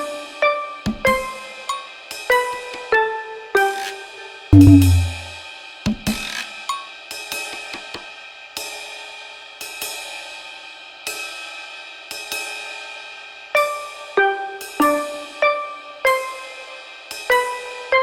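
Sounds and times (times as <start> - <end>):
sustained music tones: 4.6 - 5.3.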